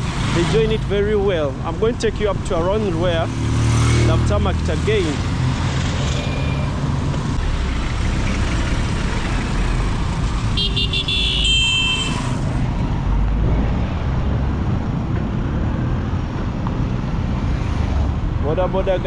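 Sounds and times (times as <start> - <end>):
road traffic rumble: 0.0 - 19.0
vehicle horn toots: 10.6 - 12.4.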